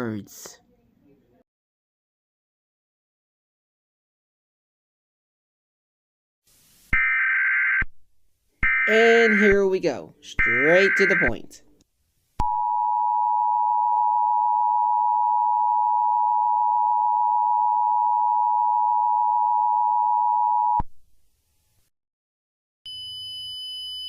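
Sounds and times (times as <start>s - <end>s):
two-tone alarm: 7.0s - 7.9s, 8.6s - 9.6s, 10.4s - 11.5s, 22.9s - 24.0s.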